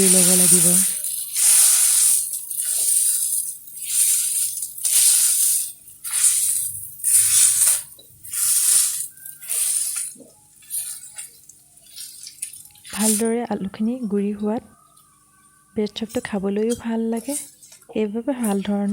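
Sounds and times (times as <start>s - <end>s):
spatula scraping frying pan: 0.0s - 12.2s.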